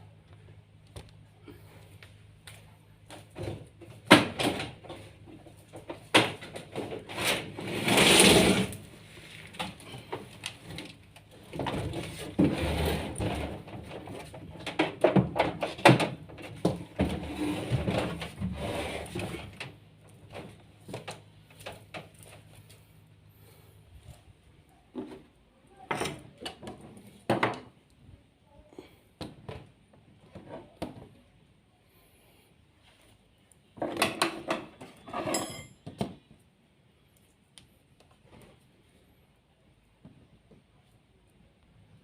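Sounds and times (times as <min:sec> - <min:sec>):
long scraping noise: 0:07.1 - 0:09.5.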